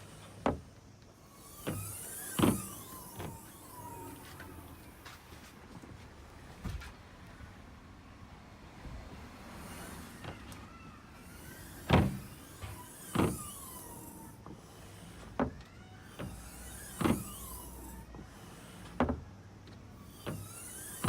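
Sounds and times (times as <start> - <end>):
car hatch clunking shut: 1.6 - 5.2, 11.3 - 14.6, 15.2 - 18.3.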